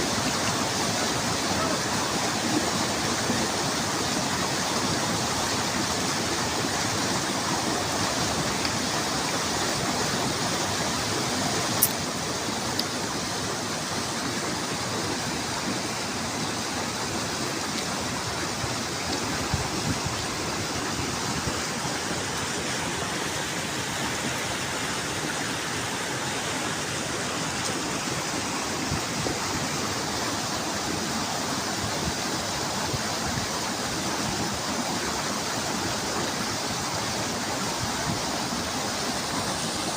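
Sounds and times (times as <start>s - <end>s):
stream rushing: 0.0s - 39.9s
sharp click: 11.8s - 12.0s.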